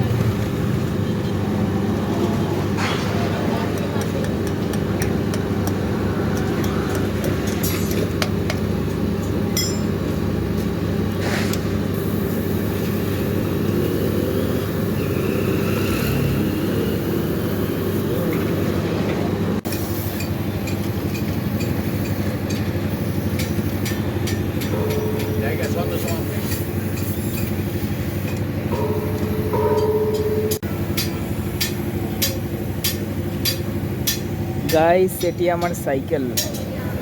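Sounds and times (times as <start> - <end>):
low engine-like hum: 0.0 - 37.0.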